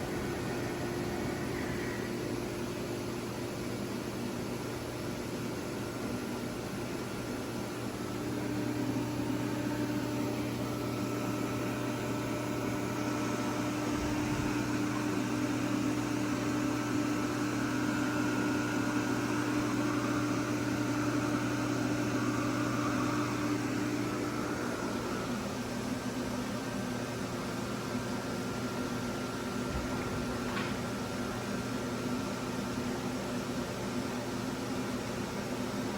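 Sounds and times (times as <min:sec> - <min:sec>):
high machine whine: 0:00.0 - 0:04.6, 0:07.8 - 0:26.3
milling machine hum: 0:00.0 - 0:35.9.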